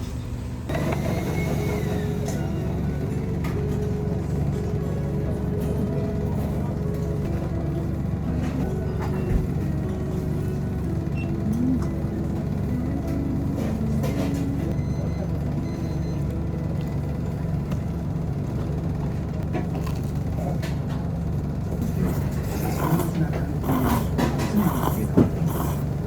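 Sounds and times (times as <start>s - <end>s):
vehicle engine hum: 0.0s - 26.0s.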